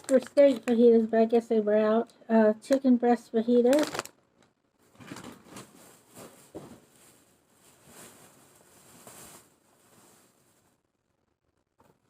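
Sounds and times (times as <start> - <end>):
packaging rustling and scraping: 3.7 - 4.1, 4.8 - 10.8.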